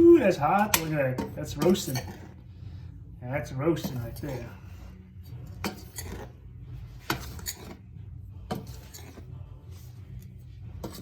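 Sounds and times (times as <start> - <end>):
steady low hum: 0.0 - 11.0
utensil scraping metal pan: 0.2 - 2.5, 3.8 - 7.9, 8.5 - 9.3, 10.8 - 11.0.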